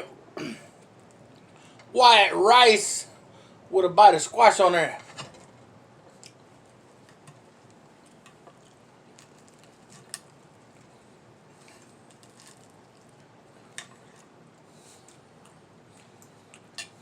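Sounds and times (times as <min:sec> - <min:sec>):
soft chewing: 0:05.6 - 0:17.0.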